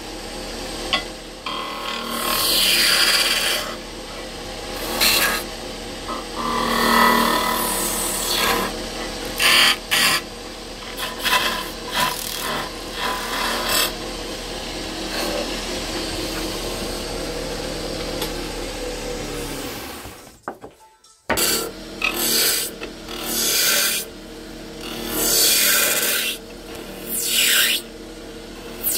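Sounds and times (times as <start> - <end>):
wood lathe running: 0.0 - 20.3, 21.3 - 28.9
chisel scraping spinning wood: 0.9 - 20.3, 24.8 - 27.9.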